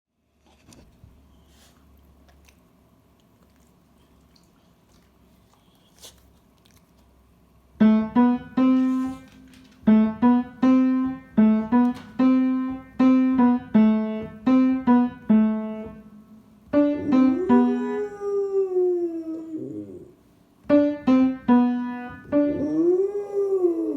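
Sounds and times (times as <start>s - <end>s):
piano tune: 7.8s - 19.0s, 20.6s - 23.9s
dog howling: 16.7s - 20.2s, 22.2s - 23.9s.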